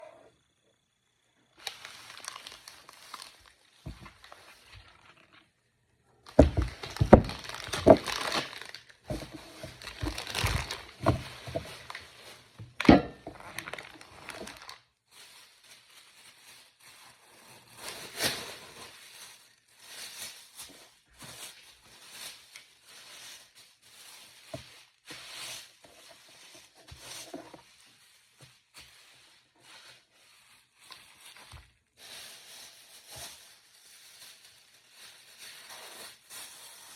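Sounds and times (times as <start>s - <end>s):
plastic packaging rustling: 1.6s - 36.9s
items knocking on surface: 6.3s - 8.3s, 9.1s - 11.8s.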